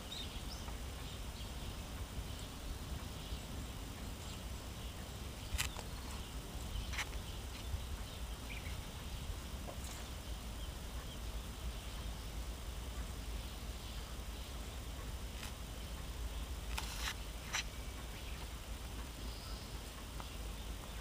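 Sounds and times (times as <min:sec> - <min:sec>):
sharp clicks: 0:16.7 - 0:19.1.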